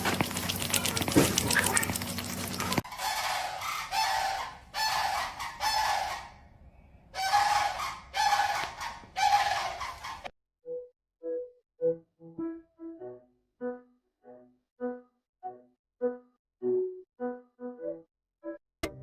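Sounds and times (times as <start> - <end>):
animal calling: 0.4 - 6.5, 7.1 - 10.3.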